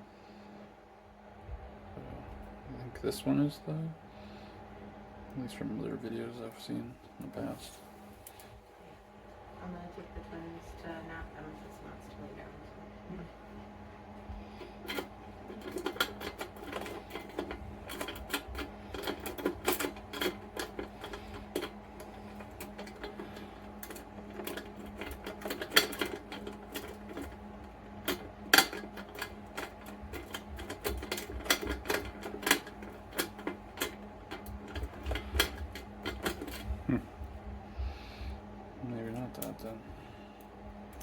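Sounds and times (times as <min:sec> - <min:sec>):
low hum: 0:00.0 - 0:41.0
lock picks scraping and clicking: 0:14.8 - 0:36.7.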